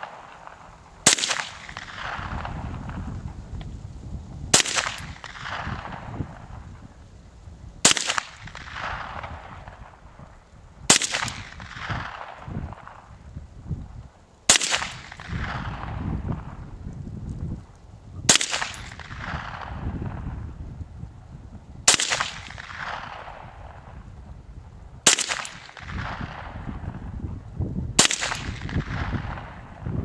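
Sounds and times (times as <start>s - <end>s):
gunshots with rolling echo: 0.0s - 3.2s, 4.5s - 6.9s, 7.8s - 13.2s, 14.5s - 16.6s, 18.2s - 20.4s, 21.8s - 24.1s, 25.0s - 27.1s, 28.0s - 29.9s.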